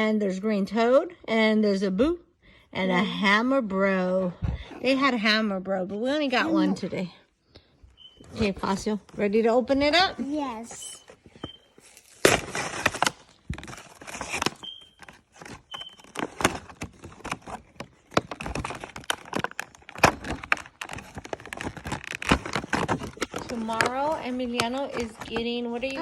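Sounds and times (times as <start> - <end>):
cardboard and plastic tearing: 11.8 - 26.0.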